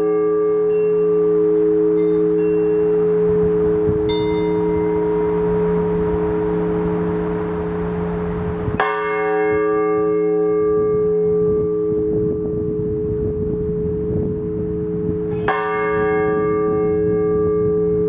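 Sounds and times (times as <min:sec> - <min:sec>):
deep bell humming: 0:00.6 - 0:09.2
bell struck ringing out: 0:00.7 - 0:09.2
wind rumbling on microphone: 0:00.9 - 0:09.4, 0:10.7 - 0:18.0.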